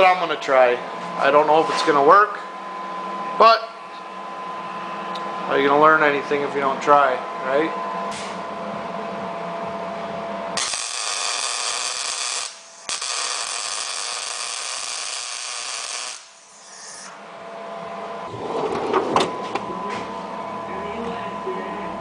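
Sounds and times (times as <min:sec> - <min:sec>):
electric arc welding: 0:10.6 - 0:17.1.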